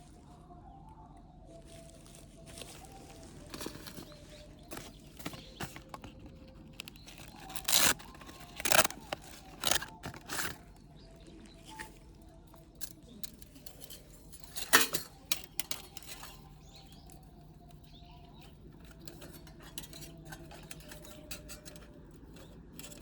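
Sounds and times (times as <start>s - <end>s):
handling scuffs and rustles: 1.6s - 12.6s.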